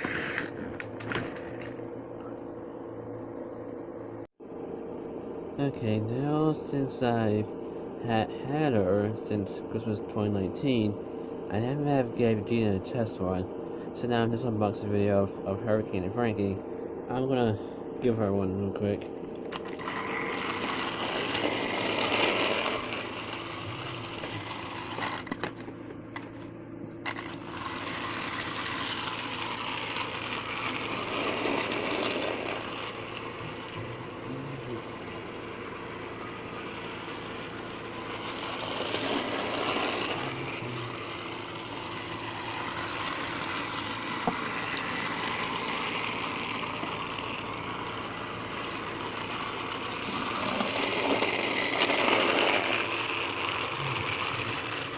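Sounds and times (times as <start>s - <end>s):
toy train motor whirring: 0.0s - 1.8s, 19.4s - 25.6s, 27.0s - 54.9s.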